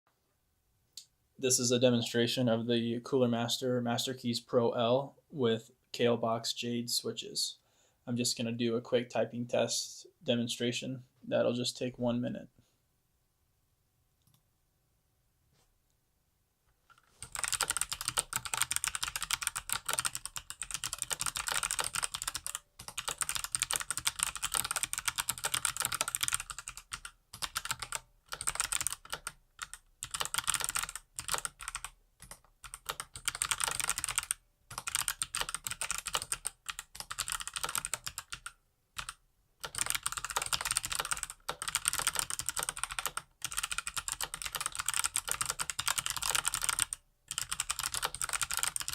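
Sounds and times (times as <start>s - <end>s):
mechanical keyboard typing: 16.9s - 48.9s.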